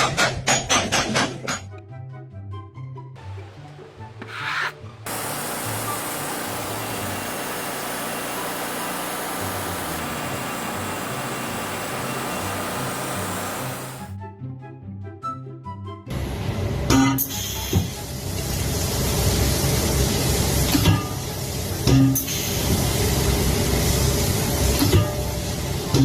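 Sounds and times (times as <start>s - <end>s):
light background music: 1.3s - 5.0s
steady rasping noise: 4.2s - 14.1s.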